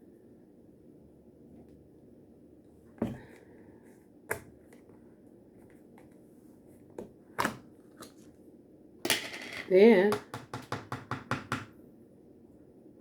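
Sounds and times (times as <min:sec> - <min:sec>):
dishes and utensils knocking: 0:09.1 - 0:11.7.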